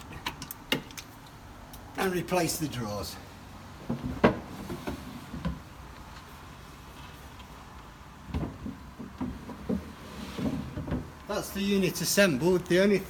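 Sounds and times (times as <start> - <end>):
wooden drawer knocks and clunks: 3.9 - 5.6, 8.3 - 11.2.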